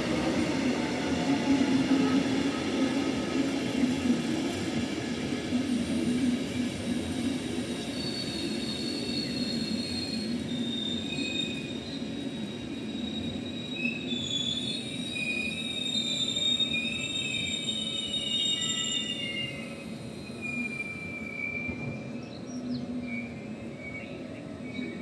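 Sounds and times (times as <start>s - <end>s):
train rolling low rumble: 0.0s - 14.2s, 18.9s - 25.0s
high wavering wheel squeals: 6.0s - 22.2s.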